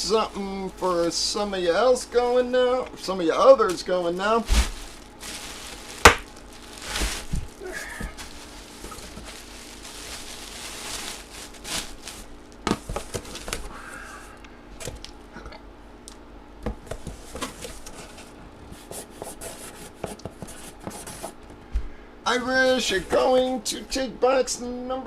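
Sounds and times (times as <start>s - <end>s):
faint steady hum: 0.0s - 25.0s
cardboard rustling and scraping: 3.6s - 13.8s, 16.8s - 21.4s.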